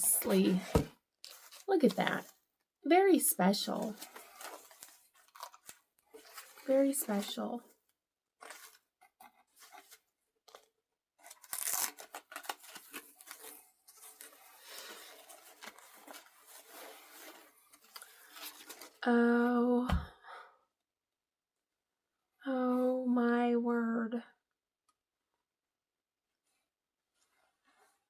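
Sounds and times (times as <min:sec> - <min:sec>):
paper wrapping rustling: 0:00.0 - 0:02.4, 0:03.6 - 0:07.4, 0:08.4 - 0:19.0.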